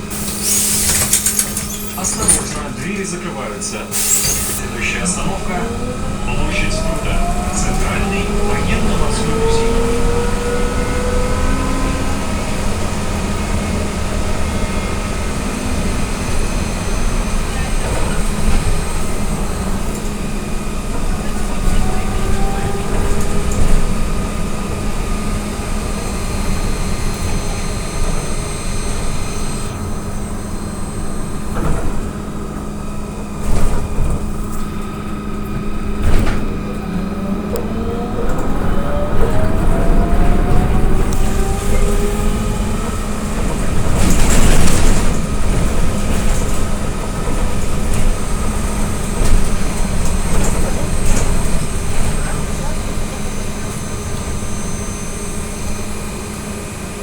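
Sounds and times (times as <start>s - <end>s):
electric traction drive hum: 0.0s - 57.0s
rising electric whine: 3.9s - 20.3s, 36.5s - 44.7s.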